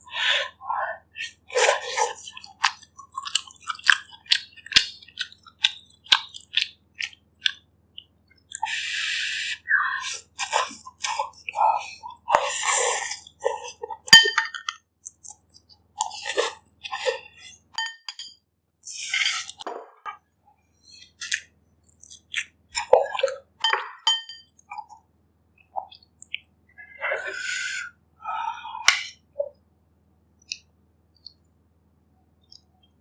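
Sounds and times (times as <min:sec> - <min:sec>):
chewing and mouth sounds: 0:01.2 - 0:08.7, 0:10.2 - 0:14.0, 0:21.0 - 0:26.7
utensil clinking against bowl: 0:23.6 - 0:24.6.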